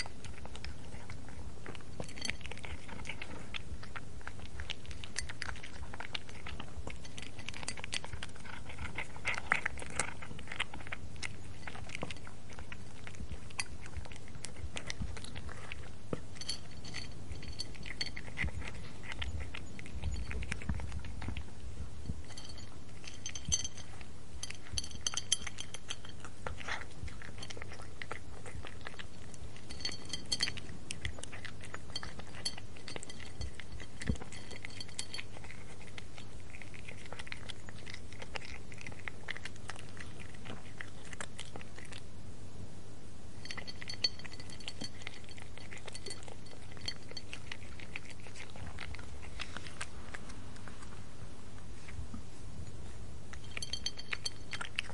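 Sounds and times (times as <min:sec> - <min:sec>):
cat chewing and crunching food: 0:00.0 - 0:54.9
light clinks: 0:16.4 - 0:18.3, 0:22.3 - 0:26.2, 0:29.7 - 0:30.7, 0:43.4 - 0:47.4, 0:53.4 - 0:54.7.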